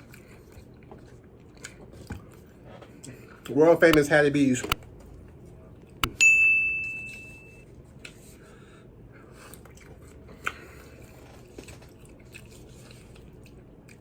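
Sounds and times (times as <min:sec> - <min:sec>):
person chewing food: 0:00.0 - 0:03.5, 0:09.2 - 0:14.0.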